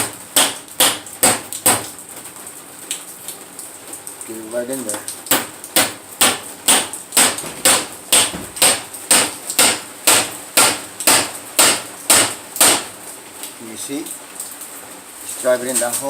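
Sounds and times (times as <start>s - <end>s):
hammer striking metal: 0.0s - 1.9s, 5.3s - 12.9s.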